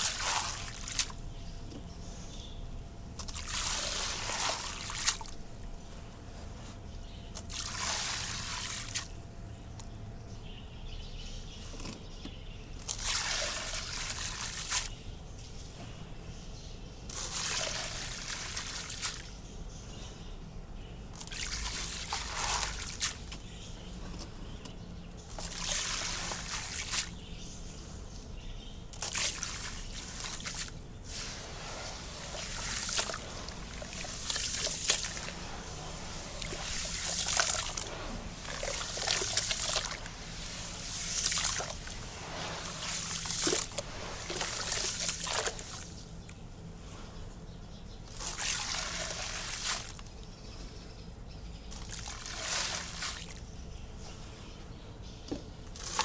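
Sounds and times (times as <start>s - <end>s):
concrete pouring into water: 29.0s - 46.0s.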